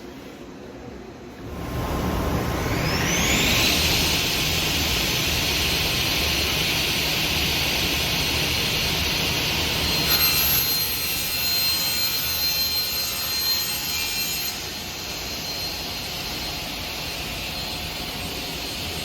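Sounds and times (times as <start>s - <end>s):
table saw blade whirring: 2.4s - 5.4s, 9.2s - 16.4s.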